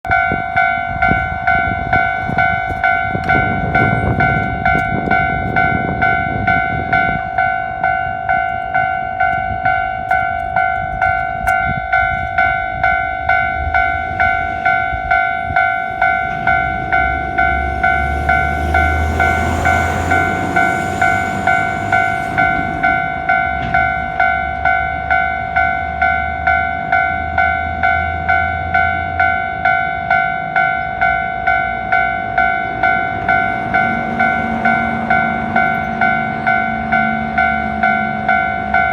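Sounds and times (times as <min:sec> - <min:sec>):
level-crossing warning bell: 0:00.1 - 0:38.9
heavy vehicle rumbling past: 0:13.6 - 0:25.3, 0:32.0 - 0:38.9.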